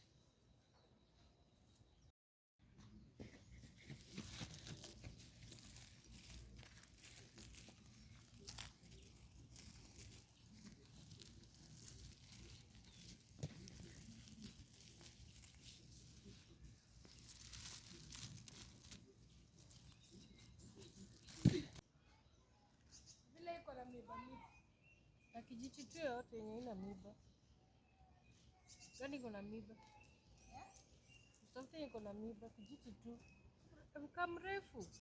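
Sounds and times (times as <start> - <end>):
dry grass rustling and crackling: 3.2 - 21.8, 28.7 - 33.4.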